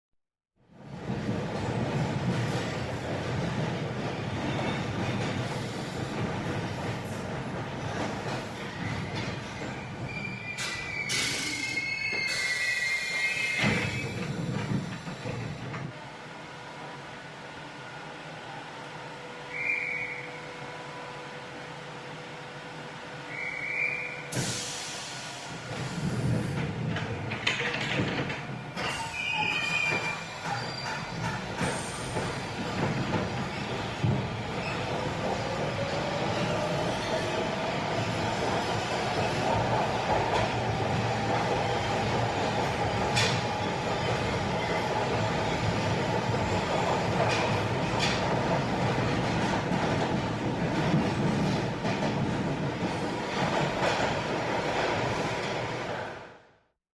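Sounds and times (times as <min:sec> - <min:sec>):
subway train rushing and rumbling: 0:00.6 - 0:56.8
rail noise: 0:00.7 - 0:56.7
train wheel squeals: 0:08.3 - 0:15.6, 0:19.5 - 0:20.6, 0:23.3 - 0:25.3, 0:28.8 - 0:33.8, 0:34.5 - 0:35.2.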